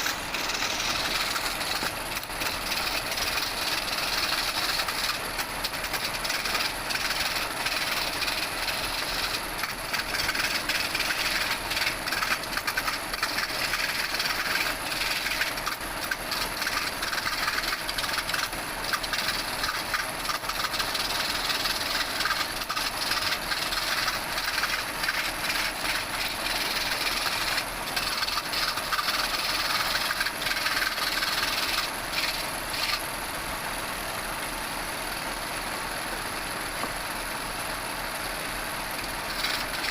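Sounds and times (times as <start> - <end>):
wood lathe cutting hiss: 0.0 - 39.9.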